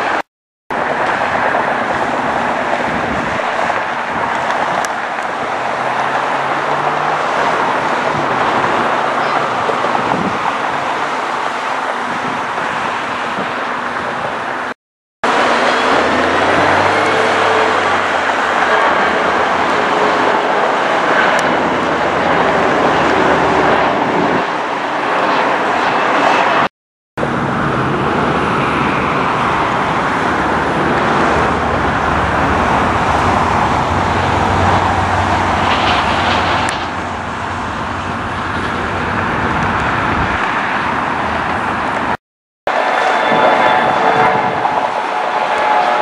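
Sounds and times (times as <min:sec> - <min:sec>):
jet airliners roaring: 0:00.0 - 0:46.0
road traffic: 0:00.0 - 0:46.0.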